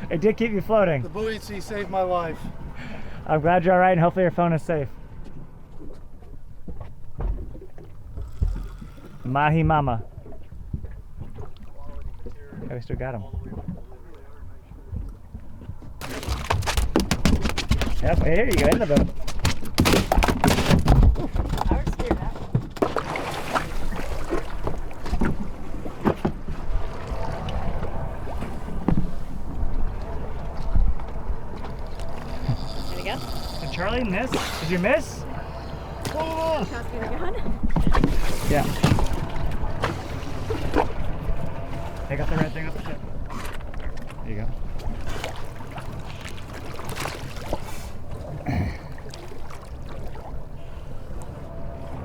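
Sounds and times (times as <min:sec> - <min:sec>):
water slapping against boat hull: 0:05.2 - 0:52.0
sharp splashes: 0:16.0 - 0:21.0, 0:22.8 - 0:51.1.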